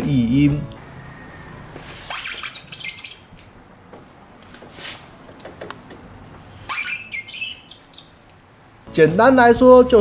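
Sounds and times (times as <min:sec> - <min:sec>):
stand squeaking against tyre: 0:00.8 - 0:08.4.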